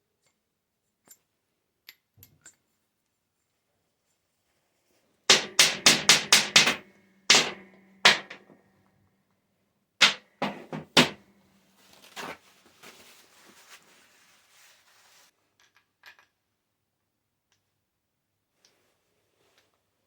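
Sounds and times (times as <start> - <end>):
metal-on-metal knocks: 5.3 - 8.6, 10.0 - 11.2.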